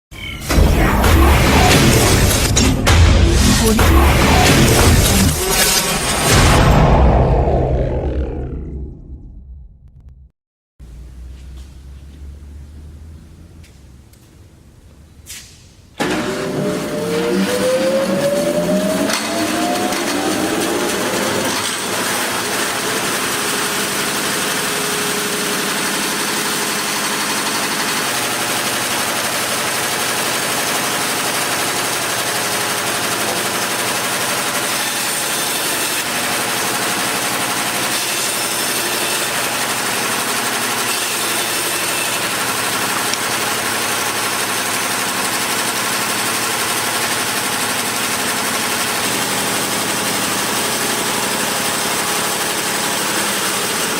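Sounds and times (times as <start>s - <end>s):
band saw running: 16.0s - 53.9s.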